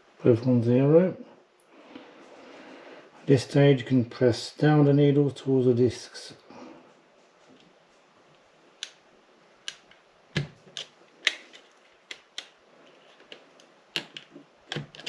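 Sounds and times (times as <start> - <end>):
small parts clicking and tapping: 9.6 - 15.0.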